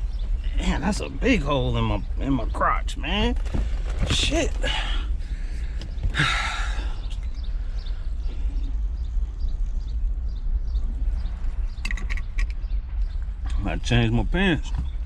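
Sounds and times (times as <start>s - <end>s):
vehicle road rumble: 0.0s - 15.0s
person exhaling: 4.7s - 7.1s.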